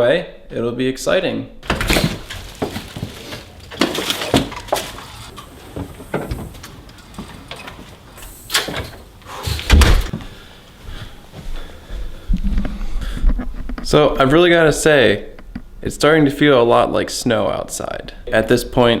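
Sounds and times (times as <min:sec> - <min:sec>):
knocks and clunks: 0:01.6 - 0:10.3
heavy low thump: 0:09.5 - 0:10.3.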